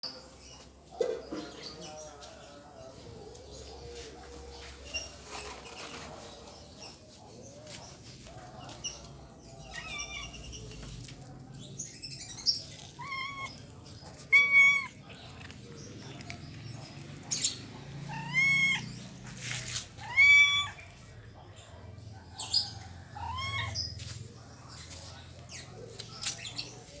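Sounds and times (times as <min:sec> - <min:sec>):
cat and kittens meowing: 0:09.7 - 0:10.6, 0:12.8 - 0:15.6, 0:18.0 - 0:19.1, 0:19.9 - 0:21.0, 0:23.1 - 0:23.9.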